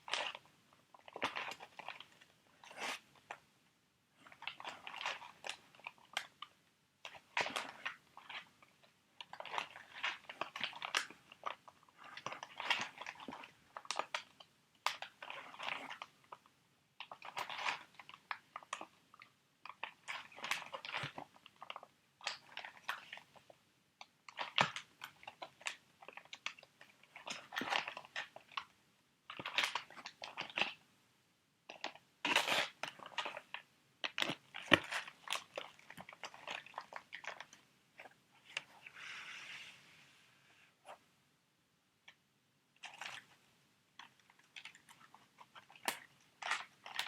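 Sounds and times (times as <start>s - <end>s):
packets crackling and clicking: 44.0s - 47.0s.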